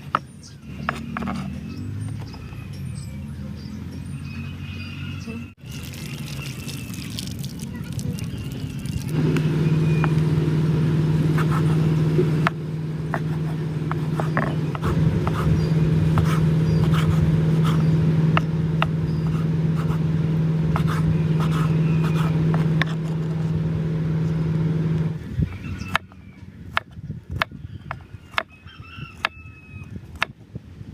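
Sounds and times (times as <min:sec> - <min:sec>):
small engine running: 0:05.6 - 0:25.2.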